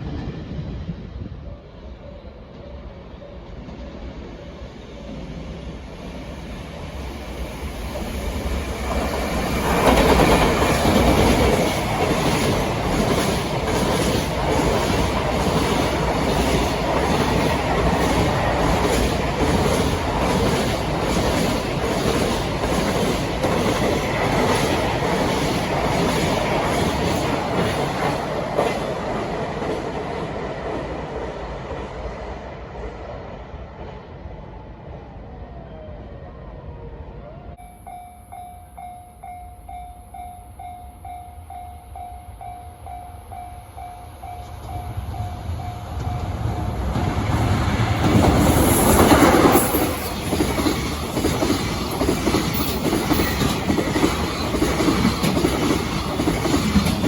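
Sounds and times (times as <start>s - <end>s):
electric locomotive passing: 0.0s - 57.0s
freight wagons clacking over rails: 45.8s - 57.0s.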